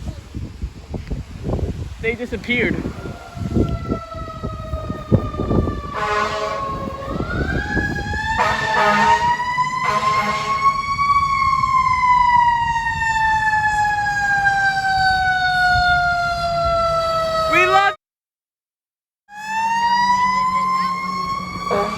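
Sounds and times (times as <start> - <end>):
truck engine rumble: 0.0 - 17.5, 19.4 - 21.9
fire truck siren wailing: 2.6 - 18.0, 19.3 - 21.9
air horn blasts: 5.8 - 10.9, 20.6 - 21.9.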